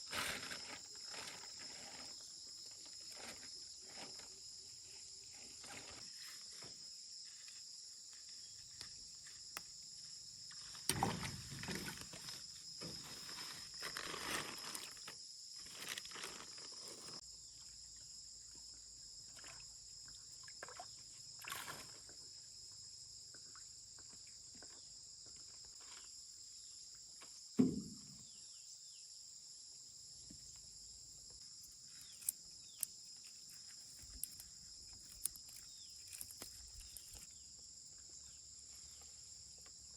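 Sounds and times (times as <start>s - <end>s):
insects chorus: 0.0s - 39.9s
sharp thump: 27.6s - 28.2s.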